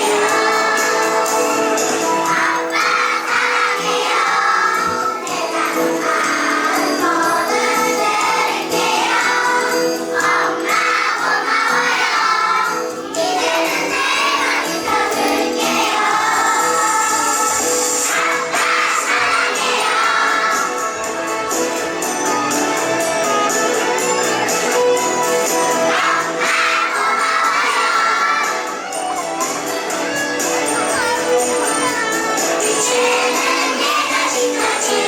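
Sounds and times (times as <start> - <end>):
chorus of voices singing: 0.0 - 20.8, 25.5 - 28.8, 31.9 - 35.0
sleigh bells jingling in a song: 0.0 - 35.0.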